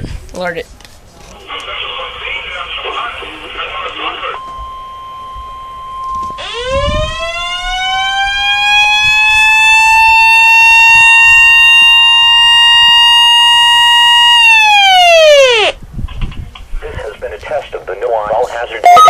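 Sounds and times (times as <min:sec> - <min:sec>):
siren wailing: 0:03.5 - 0:15.8
steady single-pitch alert tone: 0:04.2 - 0:08.2.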